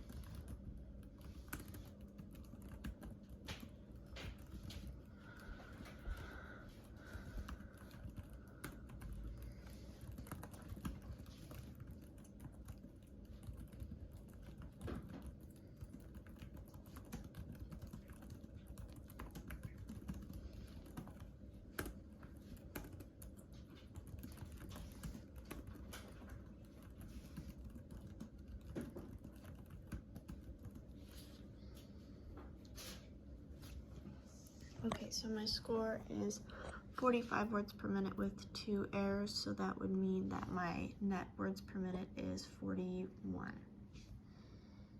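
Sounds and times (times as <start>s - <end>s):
computer keyboard typing: 0.0s - 31.4s.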